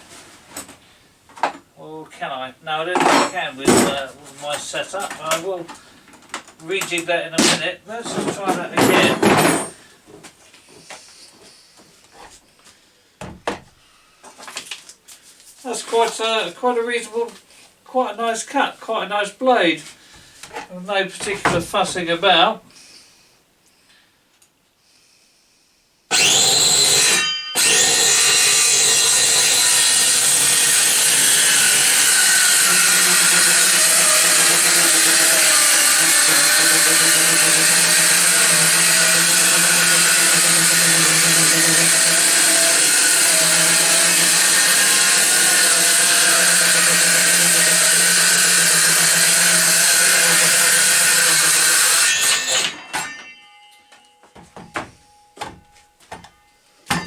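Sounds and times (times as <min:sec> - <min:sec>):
circular saw cutting wood: 0:26.1 - 0:53.4.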